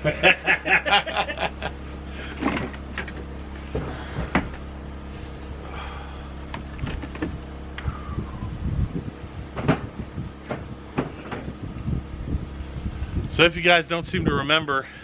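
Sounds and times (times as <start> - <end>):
firewood logs knocking: 2.4 - 4.7, 9.5 - 11.6.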